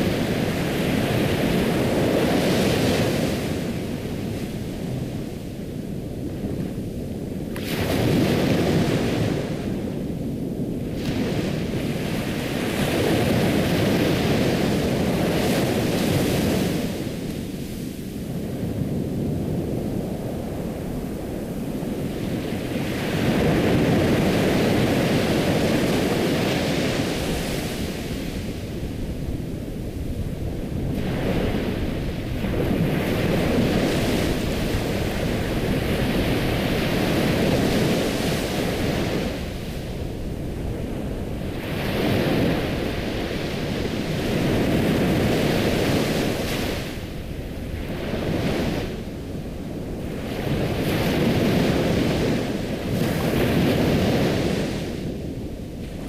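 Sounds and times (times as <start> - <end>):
ocean waves washing: 0.0 - 56.0.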